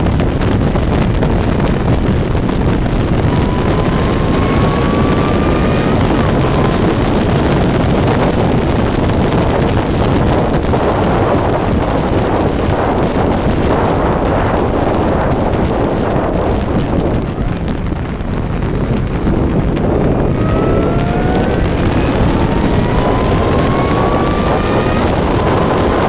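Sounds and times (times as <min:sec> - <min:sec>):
wind buffeting microphone: 0:00.0 - 0:26.0
faint engine note: 0:02.9 - 0:08.4, 0:19.4 - 0:26.0.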